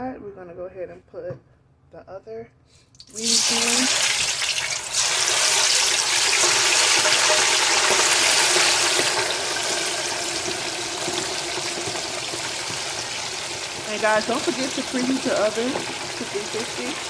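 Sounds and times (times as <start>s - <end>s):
hot oil sizzling in deep fryer: 3.0s - 17.0s.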